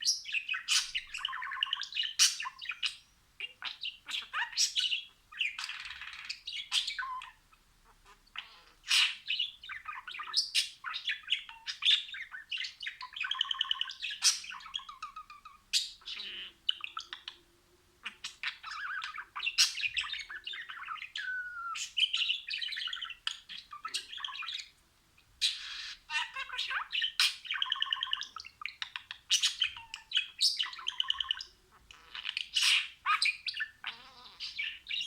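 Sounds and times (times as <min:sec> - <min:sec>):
budgerigars chattering and warbling: 0:00.1 - 0:17.4, 0:18.0 - 0:24.8, 0:25.4 - 0:35.0.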